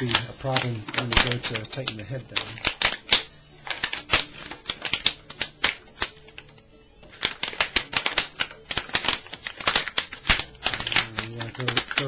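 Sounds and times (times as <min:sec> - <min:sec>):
banjo head clicking and crackling: 0:00.0 - 0:06.4, 0:07.1 - 0:12.0.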